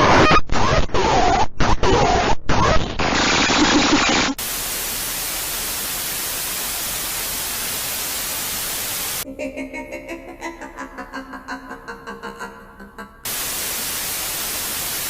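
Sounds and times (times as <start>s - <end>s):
white-noise static hiss: 4.4s - 9.2s, 13.3s - 15.0s.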